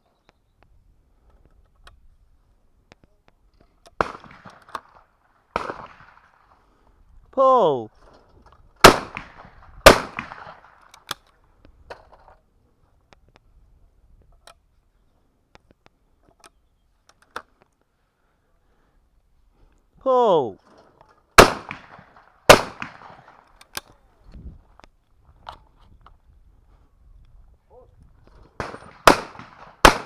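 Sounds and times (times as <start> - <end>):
shotgun shots with echo: 4.0 - 4.7, 5.6 - 6.2, 8.8 - 10.8, 21.4 - 23.4, 28.6 - 30.0
person shouting: 7.4 - 7.9, 20.0 - 20.6.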